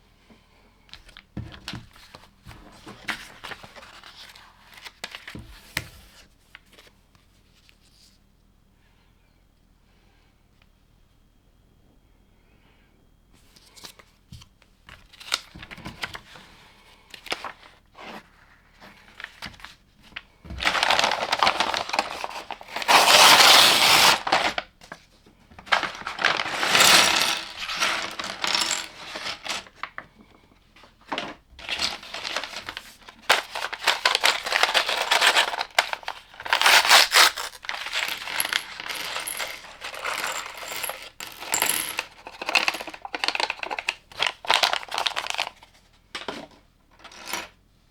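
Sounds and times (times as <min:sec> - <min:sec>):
plastic pieces clattering: 0:20.5 - 0:24.6, 0:25.6 - 0:30.0, 0:31.1 - 0:45.6.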